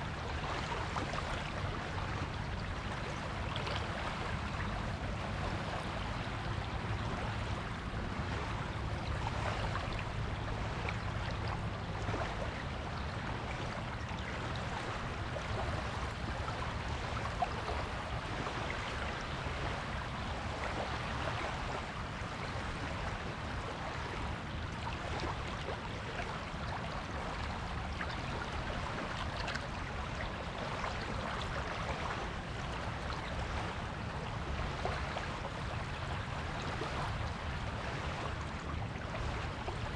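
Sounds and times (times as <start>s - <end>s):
small waves washing onto beach: 0.0s - 39.9s.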